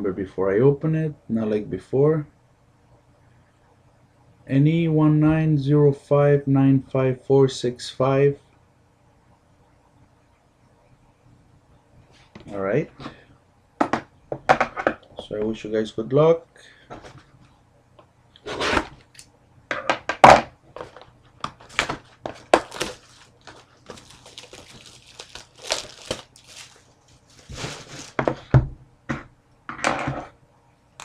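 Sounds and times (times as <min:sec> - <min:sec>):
plastic wrapping crinkling and tearing: 0:20.8 - 0:28.3.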